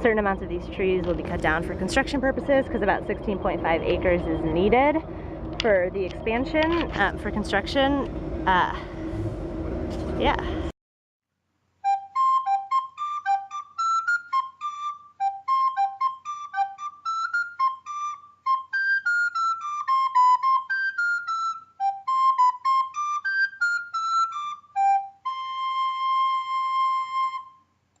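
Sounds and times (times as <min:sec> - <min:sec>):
flute-like melody: 0:11.8 - 0:27.8.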